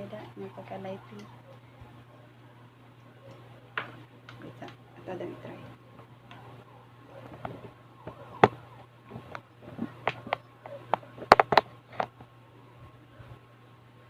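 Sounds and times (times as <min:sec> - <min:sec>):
plastic clicks and knocks: 0:10.0 - 0:12.1.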